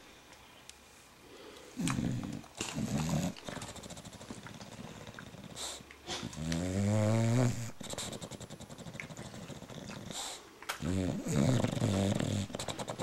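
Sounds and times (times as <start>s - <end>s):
dog breathing softly: 1.4s - 6.4s, 7.6s - 10.5s
dog snoring: 1.8s - 13.0s.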